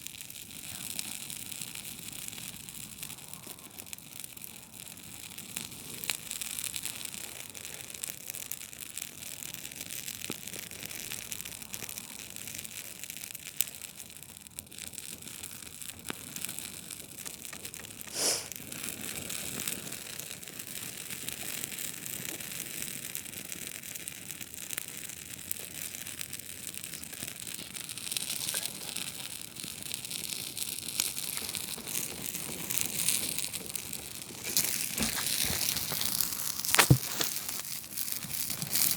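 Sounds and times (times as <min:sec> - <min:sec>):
campfire crackling: 0:00.0 - 0:38.9
loud fire pop: 0:31.0 - 0:38.9.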